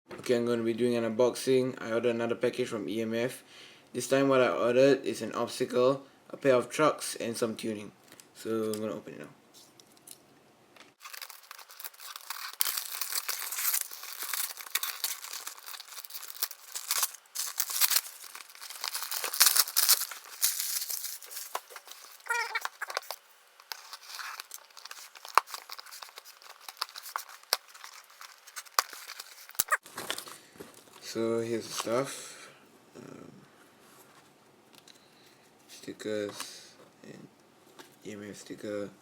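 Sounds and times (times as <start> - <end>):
package tearing and crinkling: 11.0 - 30.3.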